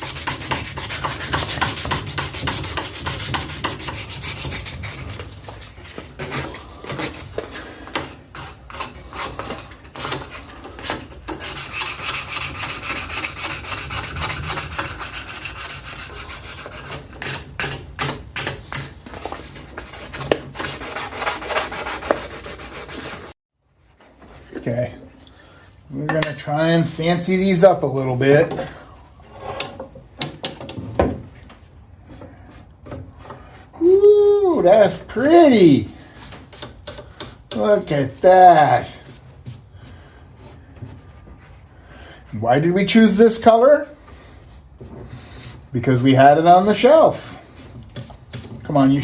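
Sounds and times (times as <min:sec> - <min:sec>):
sandpaper scrubbing metal: 0:00.0 - 0:23.4, 0:44.5 - 0:49.0.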